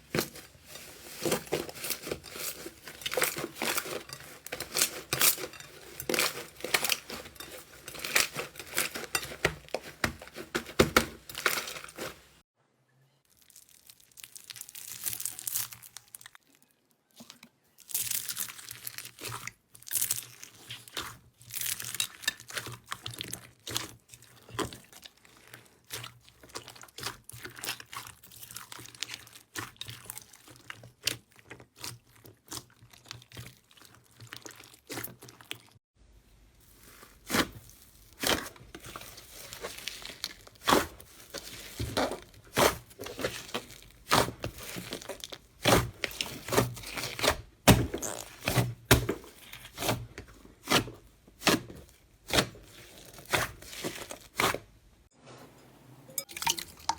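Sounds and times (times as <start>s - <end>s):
slime crackling when squeezed: 13.3s - 16.7s.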